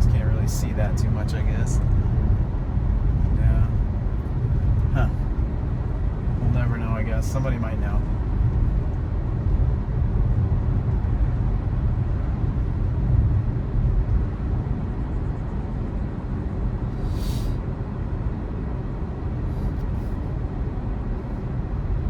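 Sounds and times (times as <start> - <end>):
road and tyre rumble: 0.0 - 22.0
brief hiss: 17.0 - 17.6.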